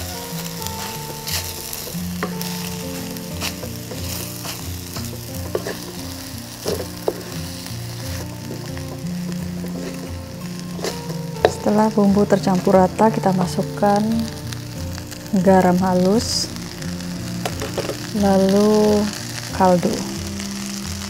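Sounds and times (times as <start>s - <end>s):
spatula scraping and knocking pan: 0.0s - 11.9s, 17.4s - 18.1s
rice sizzling in a pan: 0.0s - 21.0s.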